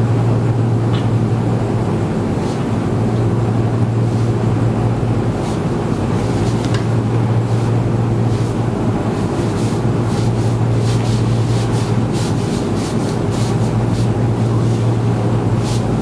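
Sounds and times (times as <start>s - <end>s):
steady low hum: 0.0s - 16.0s
hands rubbing on clothing: 5.3s - 16.0s.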